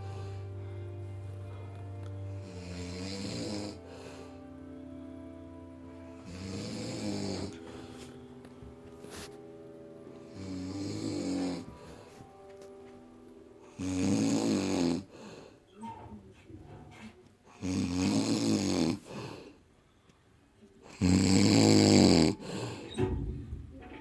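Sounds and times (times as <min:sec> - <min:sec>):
quiet breathing: 0:00.0 - 0:05.4, 0:06.0 - 0:23.2
man snoring: 0:02.4 - 0:04.2, 0:06.2 - 0:07.6, 0:10.3 - 0:11.7, 0:13.8 - 0:15.1, 0:17.6 - 0:19.0, 0:20.9 - 0:22.4.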